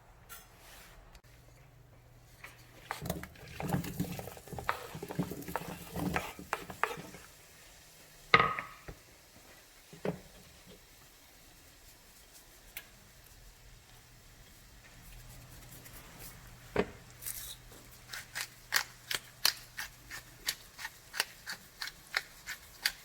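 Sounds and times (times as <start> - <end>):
utensils scraping and clattering: 2.3 - 7.3, 17.2 - 23.0.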